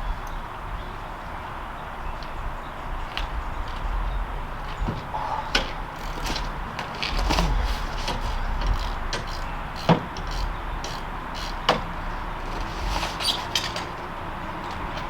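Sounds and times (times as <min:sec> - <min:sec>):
tools knocking and clicking: 0:04.9 - 0:14.0.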